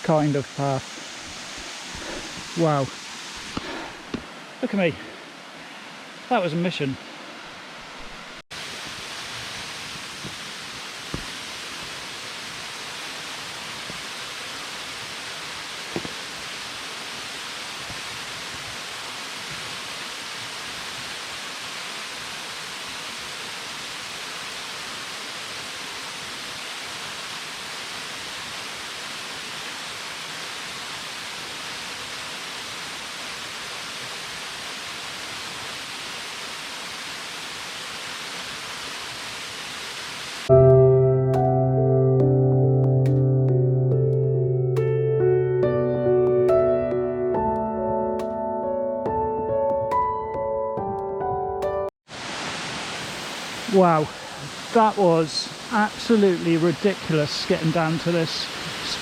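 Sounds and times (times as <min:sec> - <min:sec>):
waterfall pouring: 0:52.1 - 0:59.0.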